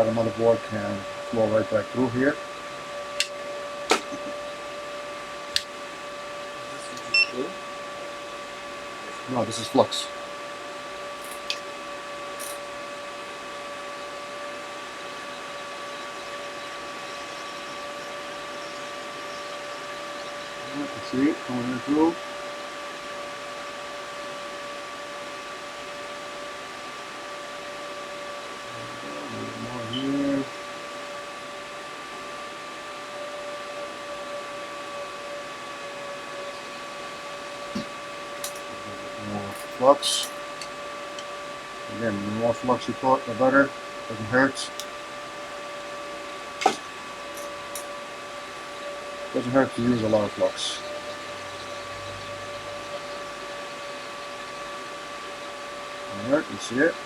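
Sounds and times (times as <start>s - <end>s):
two-note whine: 0.0s - 8.0s, 28.6s - 30.6s
hot air airflow hiss: 0.0s - 57.0s.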